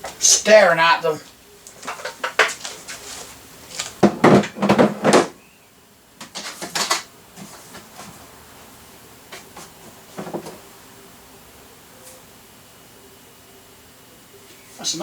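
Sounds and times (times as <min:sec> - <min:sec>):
hard drives clattering together: 0:01.7 - 0:03.0, 0:03.7 - 0:05.4, 0:06.2 - 0:08.2, 0:09.3 - 0:10.7.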